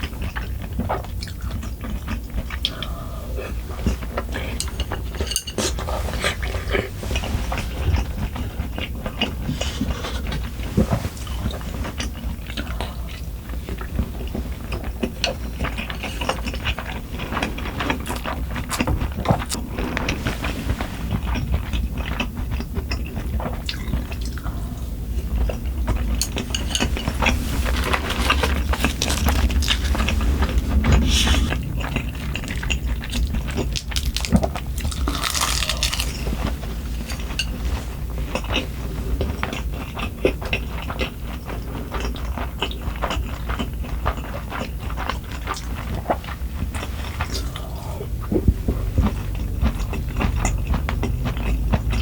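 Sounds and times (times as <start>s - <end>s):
chewing food: 0.0s - 52.0s
utensils clinking against dishes: 3.8s - 8.0s, 25.6s - 30.1s, 37.1s - 38.6s.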